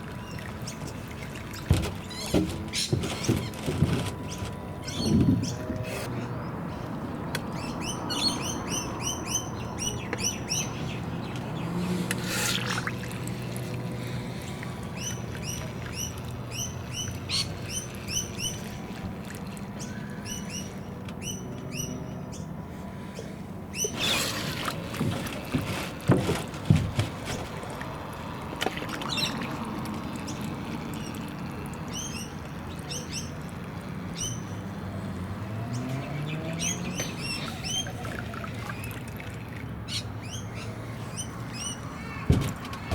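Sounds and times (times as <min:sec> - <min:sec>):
small birds chirping: 0:04.2 - 0:13.1, 0:14.0 - 0:24.2, 0:28.9 - 0:35.0, 0:35.6 - 0:42.3.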